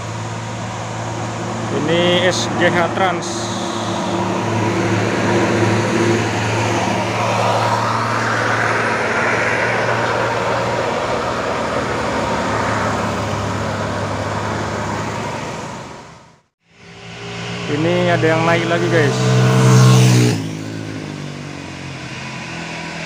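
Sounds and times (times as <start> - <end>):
bus engine rumble: 0.0 - 23.0
road noise: 0.0 - 23.0.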